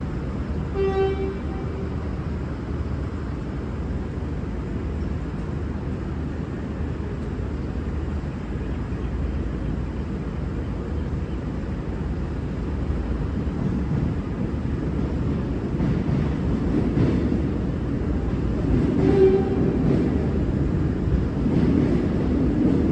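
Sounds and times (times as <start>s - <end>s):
diesel engine rumbling: 0.0s - 22.9s
locomotive horn blast: 0.7s - 2.2s, 19.0s - 19.9s.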